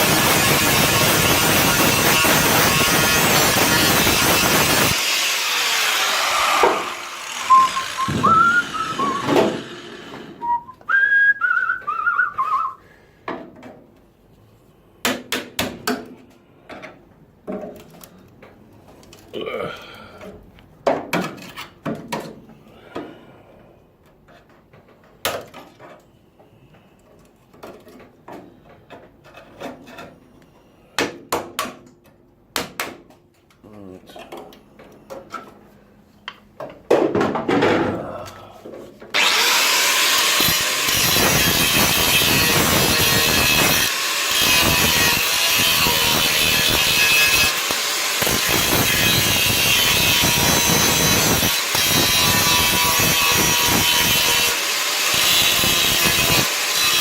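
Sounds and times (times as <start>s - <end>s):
power grinder grinding metal: 0.0s - 10.6s, 39.2s - 57.0s.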